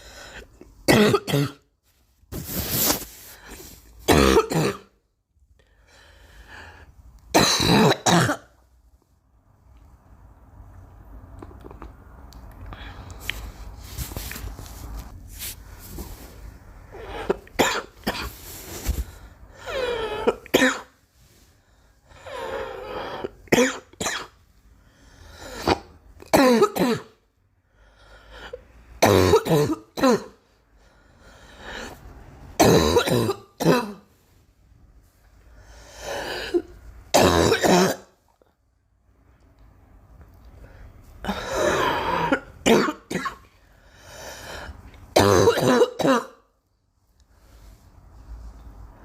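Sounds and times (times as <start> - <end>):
girl coughing: 0.9 - 1.6, 4.1 - 4.9, 7.4 - 8.6, 17.1 - 18.3, 19.6 - 20.9, 23.5 - 24.3, 25.6 - 27.1, 29.0 - 30.4, 32.6 - 34.0, 36.3 - 38.1, 41.3 - 43.4, 45.1 - 46.4.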